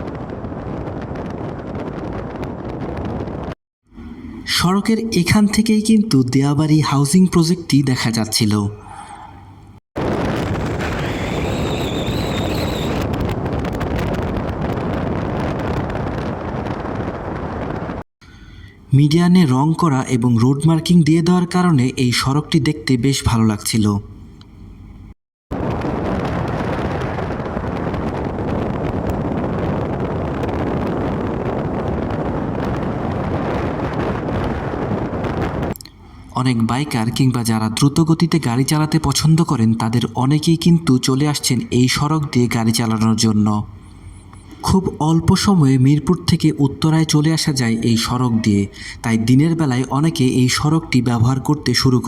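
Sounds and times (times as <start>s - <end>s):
wind buffeting microphone: 0.0s - 4.5s, 9.2s - 18.0s, 24.7s - 37.2s
faint high whine: 3.9s - 52.0s.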